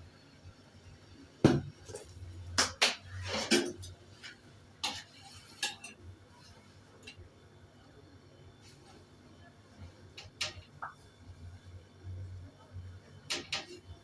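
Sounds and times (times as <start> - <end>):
pot and utensils clattering: 3.1 - 6.0, 13.3 - 14.0.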